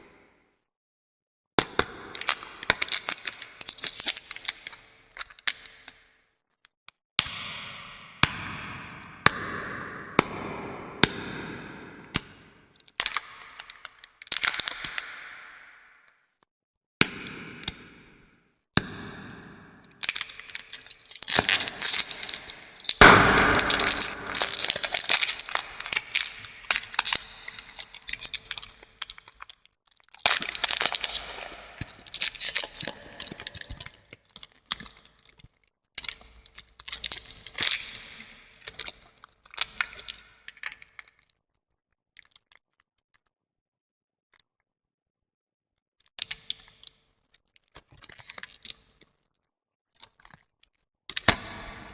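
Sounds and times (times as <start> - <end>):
hard candy wrapper crinkling: 20.0 - 35.4.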